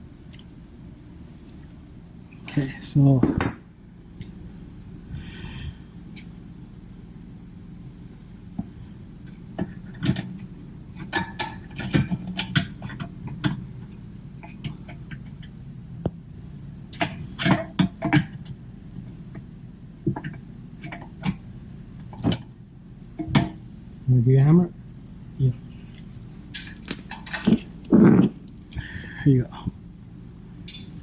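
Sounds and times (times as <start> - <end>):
steady low hum: 0.0 - 31.0
metal parts clicking and knocking: 26.6 - 27.6.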